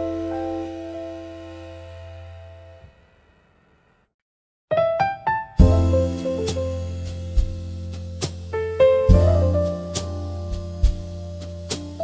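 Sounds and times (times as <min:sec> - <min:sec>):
electric piano chords: 0:00.0 - 0:02.8, 0:04.7 - 0:12.0
deep bass note: 0:05.6 - 0:08.0.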